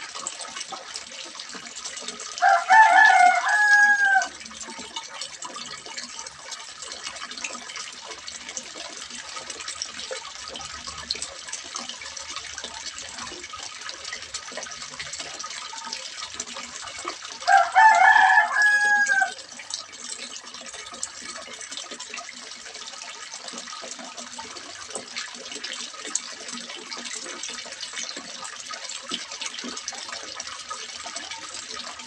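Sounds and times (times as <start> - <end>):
water splashing into pond: 0.0 - 32.0
rooster crowing: 2.4 - 4.4, 17.4 - 19.4.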